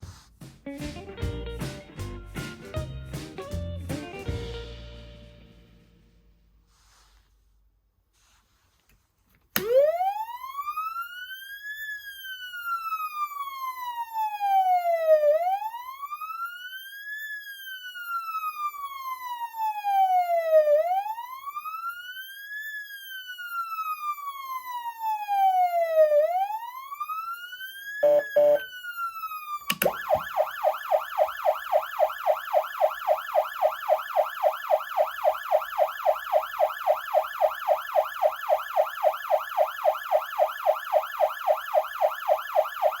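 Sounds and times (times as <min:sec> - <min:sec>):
siren wail and yelp: 0:09.6 - 0:43.0.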